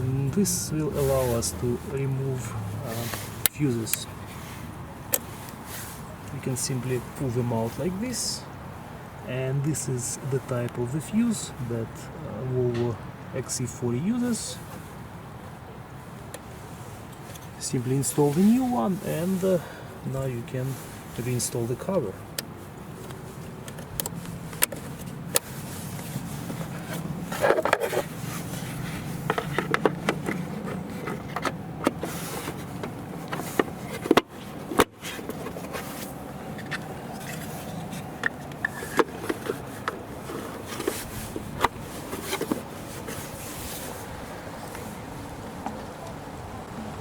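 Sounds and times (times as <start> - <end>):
plastic scraping and rubbing: 24.1 - 45.0.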